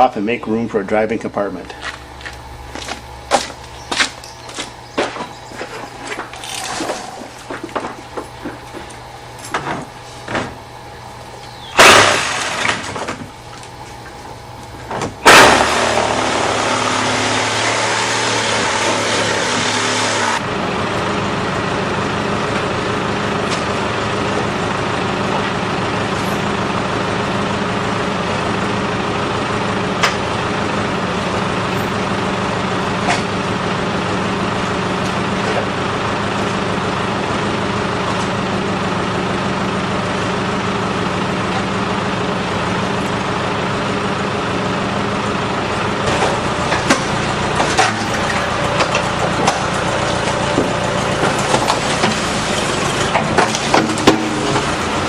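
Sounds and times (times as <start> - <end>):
machine running steadily: 0.0 - 55.0
sharp snaps and crunches: 1.7 - 7.8.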